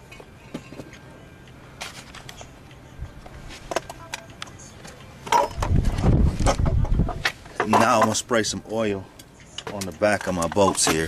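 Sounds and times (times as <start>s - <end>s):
metal tools clicking and clinking: 5.2s - 5.8s, 7.6s - 8.5s, 9.2s - 11.0s.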